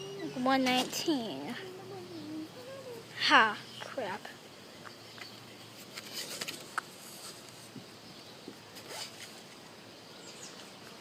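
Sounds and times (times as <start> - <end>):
object rustling and clicking: 5.2 - 7.8.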